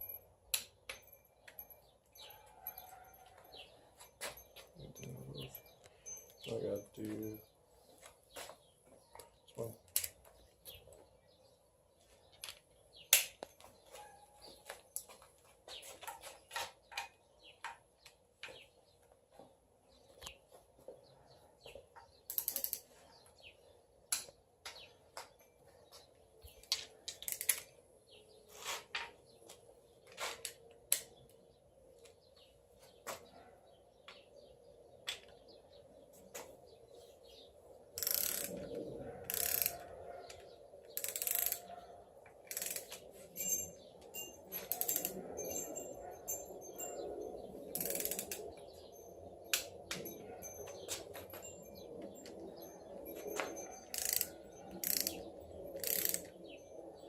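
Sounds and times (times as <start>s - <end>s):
ratcheting torque wrench clicking: 22.3s - 22.8s, 27.2s - 27.6s, 38.0s - 38.6s, 39.3s - 39.8s, 41.0s - 41.6s, 42.5s - 42.9s, 44.7s - 45.1s, 47.7s - 48.4s, 53.9s - 55.2s, 55.8s - 56.3s.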